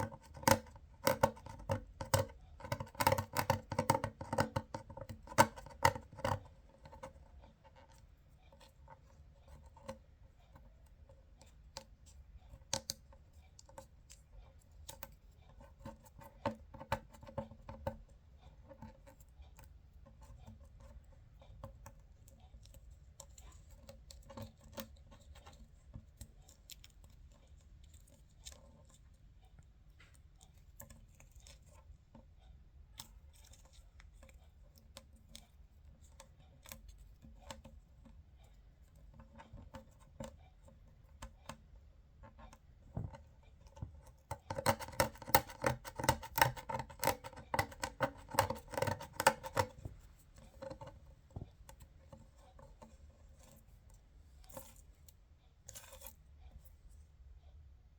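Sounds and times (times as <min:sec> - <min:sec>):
small sharp clicks and taps: 0:00.0 - 0:10.6, 0:11.4 - 0:18.1, 0:32.9 - 0:56.2.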